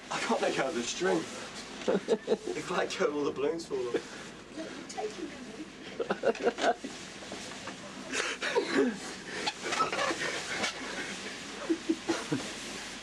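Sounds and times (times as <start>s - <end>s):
people talking: 0.1s - 1.3s, 1.9s - 4.0s, 4.6s - 5.7s.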